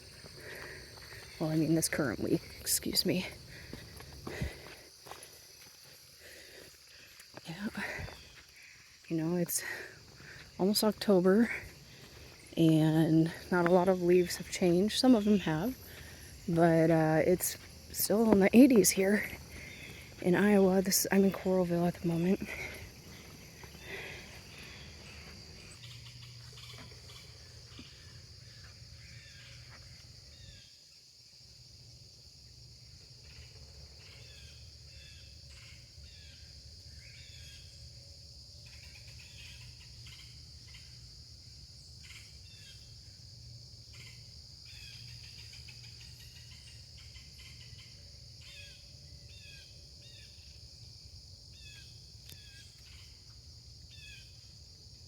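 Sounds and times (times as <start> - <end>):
crickets droning: 0.0 - 55.0
birds calling: 5.9 - 29.7.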